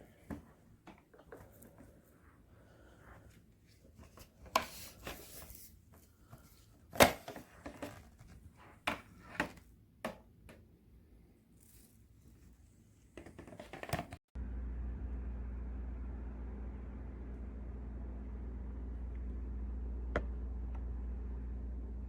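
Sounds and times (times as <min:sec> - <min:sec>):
steady low hum: 0:14.4 - 0:22.0.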